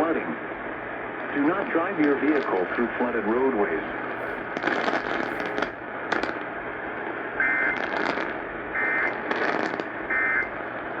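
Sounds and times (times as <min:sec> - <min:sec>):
radio static hissing and crackling: 0:00.0 - 0:11.0
warbling two-tone data bursts: 0:08.8 - 0:10.5.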